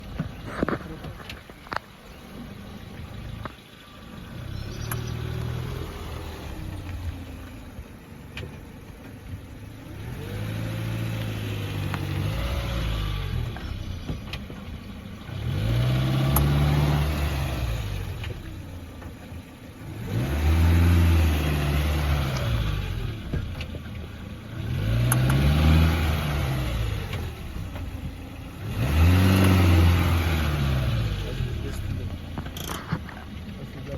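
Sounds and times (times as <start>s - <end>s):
car engine revving: 0.0s - 33.9s.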